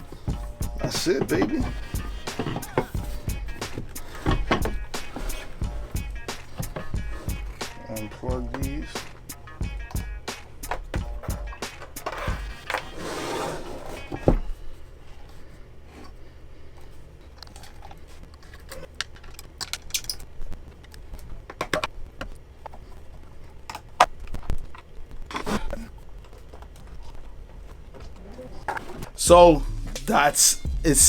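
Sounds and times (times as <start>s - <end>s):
steady low hum: 0.0s - 12.7s, 29.2s - 31.0s
cables and plugs being handled: 0.0s - 13.0s, 13.7s - 29.2s.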